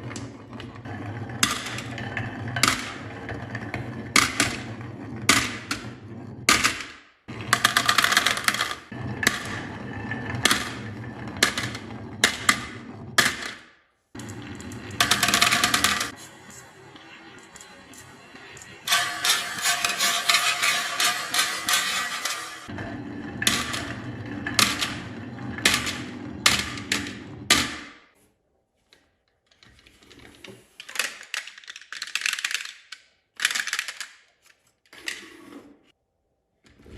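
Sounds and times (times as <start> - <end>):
marbles rolling down wooden run: 0.0 - 6.2, 7.3 - 13.5, 14.2 - 16.2.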